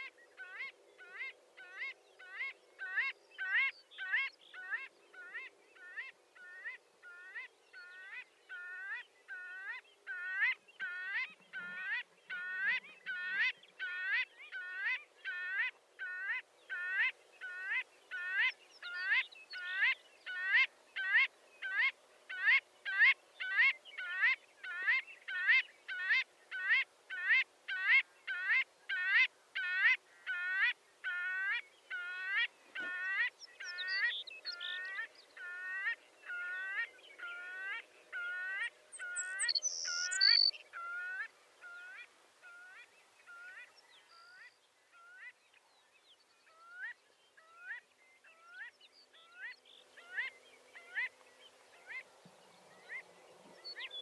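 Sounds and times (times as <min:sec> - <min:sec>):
godwit calling: 0:08.5 - 0:43.7.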